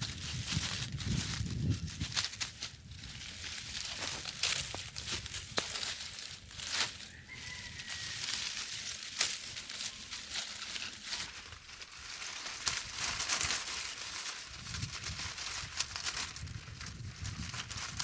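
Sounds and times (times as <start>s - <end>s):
wind rumble on microphone: 0.0s - 8.8s, 14.4s - 18.0s
rustling and crackling: 0.0s - 18.0s.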